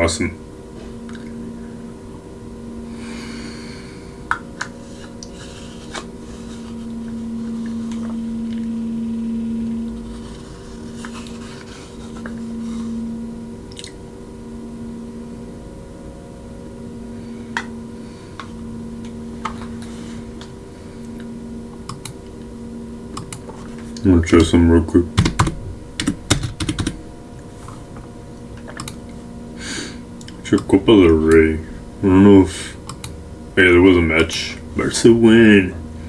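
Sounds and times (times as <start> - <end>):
steady low hum: 0.0 - 36.0
sharp clicks: 32.9 - 33.2.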